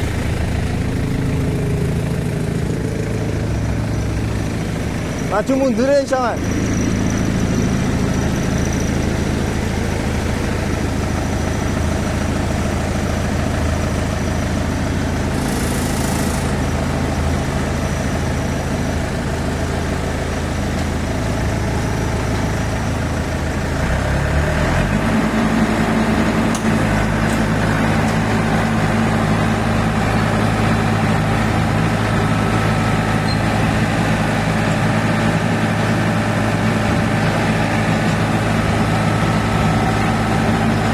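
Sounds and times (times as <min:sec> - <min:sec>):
combine harvester engine running: 0:00.0 - 0:40.9.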